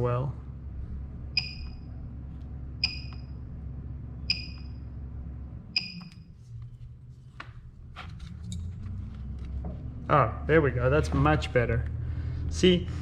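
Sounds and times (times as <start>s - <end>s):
low hum: 0.0s - 13.0s
spot welder snap with beep: 2.8s - 3.3s, 4.3s - 4.7s, 5.8s - 6.2s.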